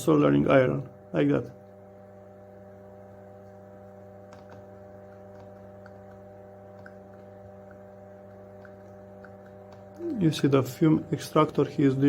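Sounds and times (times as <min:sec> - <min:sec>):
fume extractor humming: 0:00.0 - 0:12.0
solder crackling: 0:02.9 - 0:11.2.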